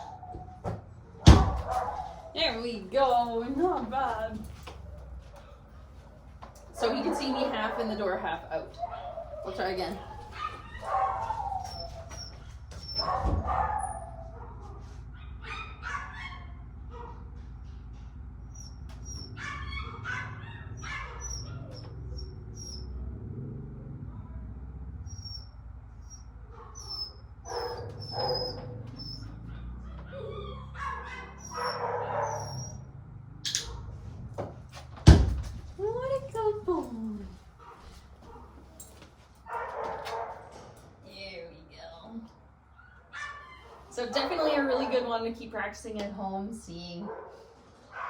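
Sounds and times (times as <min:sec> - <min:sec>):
thump: 0:00.6 - 0:01.9, 0:34.4 - 0:35.7
puppy whining and yipping: 0:08.8 - 0:14.5, 0:15.1 - 0:16.6, 0:18.4 - 0:23.0, 0:25.1 - 0:32.9, 0:42.8 - 0:43.8.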